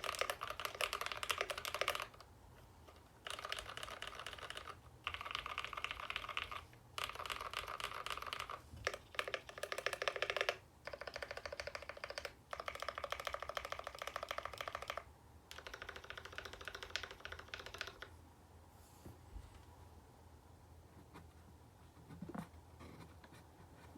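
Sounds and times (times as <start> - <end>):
typing on mechanical keyboard: 0.0 - 18.2.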